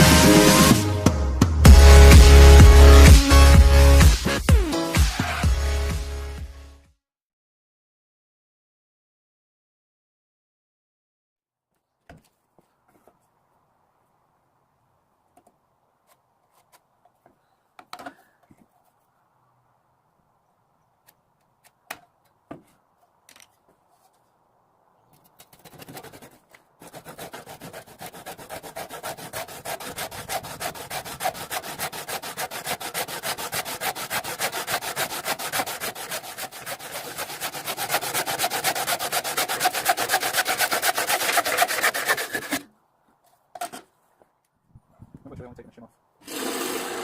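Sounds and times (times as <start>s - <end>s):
rubbing strokes on wood: 25.5s - 42.7s.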